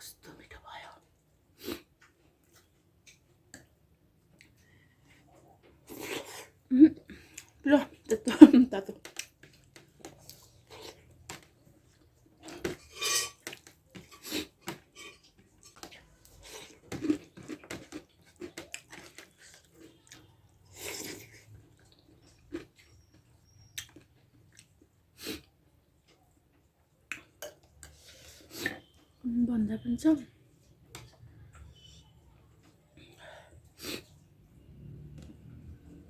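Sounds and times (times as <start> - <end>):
chewing and mouth noises: 9.0 - 12.7, 13.4 - 29.0
plate and utensils clinking: 12.6 - 14.2.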